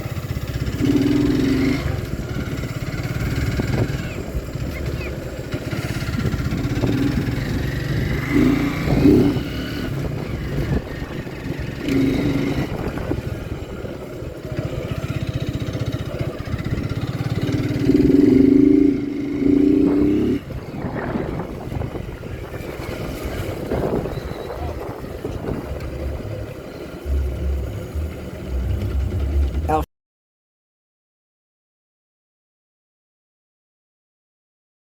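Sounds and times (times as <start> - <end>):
motorcycle engine running: 0.0 - 29.9
road noise: 0.0 - 29.9
steady pitched notes: 24.6 - 29.8.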